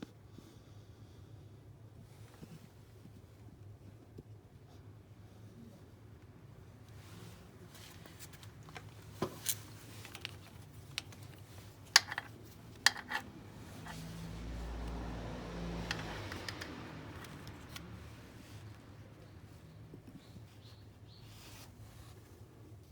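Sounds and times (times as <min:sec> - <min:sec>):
sharp clicks and knocks: 0:12.0 - 0:14.0, 0:15.8 - 0:17.9.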